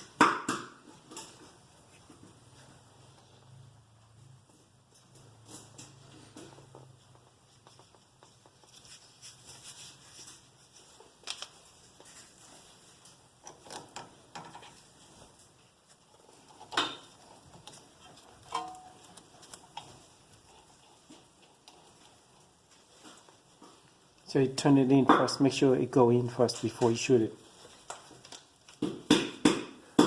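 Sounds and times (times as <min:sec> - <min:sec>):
ringing metal clinks: 0:18.5 - 0:19.1.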